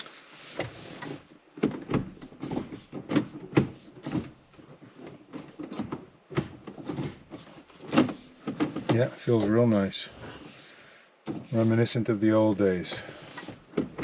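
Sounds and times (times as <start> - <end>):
gear shifter clunks and clicks: 0.0 - 9.6, 11.2 - 11.7, 12.8 - 14.0.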